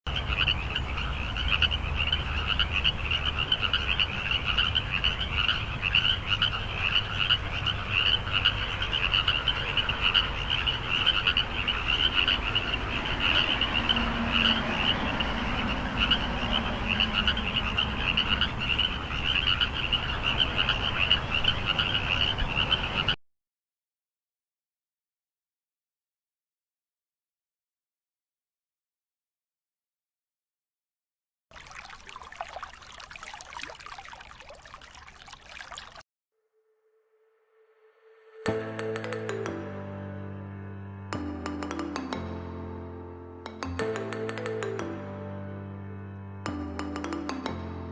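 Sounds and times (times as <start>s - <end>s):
frogs croaking: 0.1s - 23.2s, 31.6s - 36.0s.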